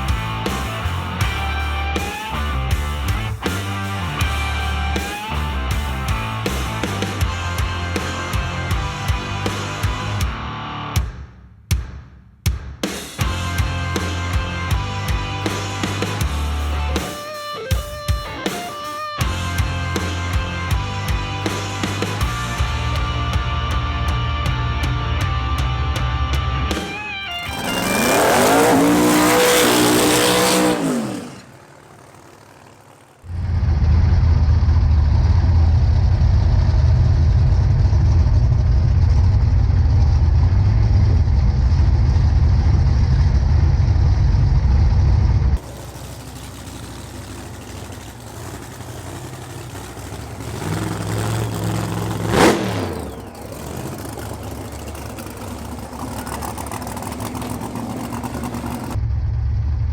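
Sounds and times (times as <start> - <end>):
drag racing engine revving: 0.0 - 11.0, 13.2 - 17.3, 18.4 - 59.0
car passing: 27.4 - 36.0, 45.6 - 59.0.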